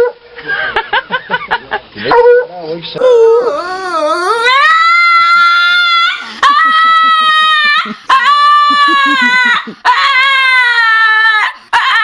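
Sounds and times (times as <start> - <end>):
dog howling: 3.0 - 12.0.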